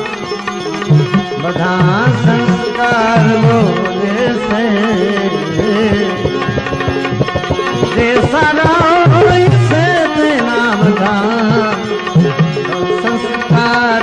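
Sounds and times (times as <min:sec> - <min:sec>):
tabla drumming: 0:00.0 - 0:14.0
wavering melody line: 0:00.3 - 0:13.7
person singing: 0:01.3 - 0:14.0.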